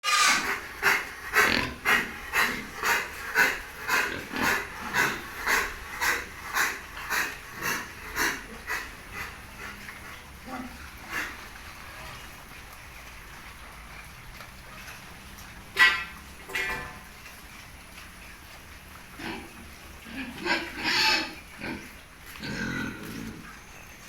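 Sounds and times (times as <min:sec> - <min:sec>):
pig squealing grunts: 0:00.0 - 0:12.1, 0:19.2 - 0:23.6.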